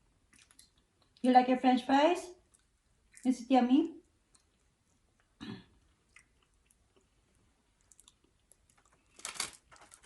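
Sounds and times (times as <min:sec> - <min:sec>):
chewing crunchy fried food: 0:00.0 - 0:01.3, 0:02.4 - 0:03.4, 0:04.0 - 0:10.0.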